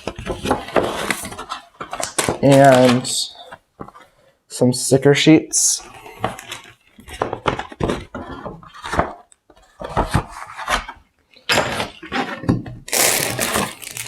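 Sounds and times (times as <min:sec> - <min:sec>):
packaging rustling: 0:00.0 - 0:04.2, 0:11.8 - 0:14.0
plastic bag crinkling: 0:12.9 - 0:14.0.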